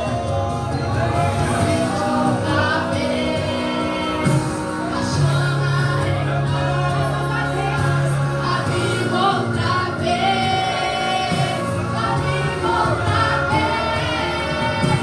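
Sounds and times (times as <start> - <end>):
group of voices singing: 0.0 - 15.0.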